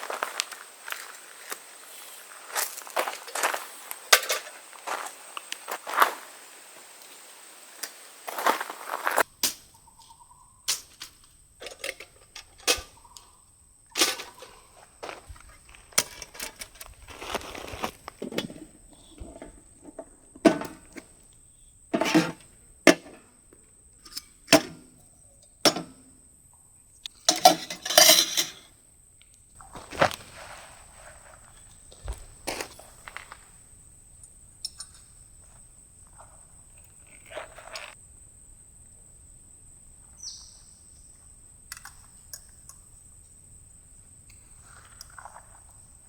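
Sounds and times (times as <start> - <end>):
camping gear clicks and clinks: 0.0 - 6.4, 10.7 - 21.1, 27.0 - 38.0
rustling bursts: 29.6 - 33.1.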